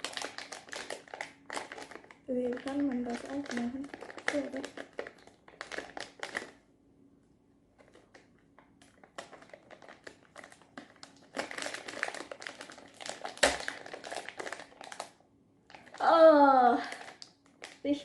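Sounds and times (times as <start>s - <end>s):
crinkly wrapping rustling: 0.0s - 6.6s, 7.7s - 18.0s.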